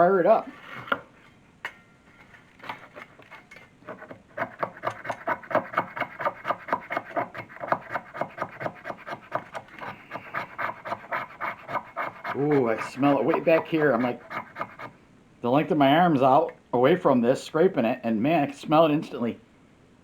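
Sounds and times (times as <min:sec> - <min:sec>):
wood stick being scraped: 0:02.6 - 0:15.0.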